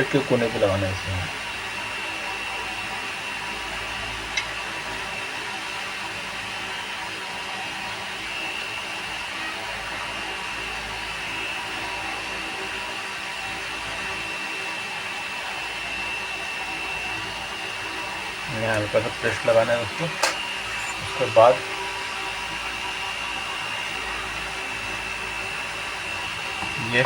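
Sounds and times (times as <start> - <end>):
thin high whine: 18.1 - 27.0
small motor blower whoosh: 19.2 - 27.0.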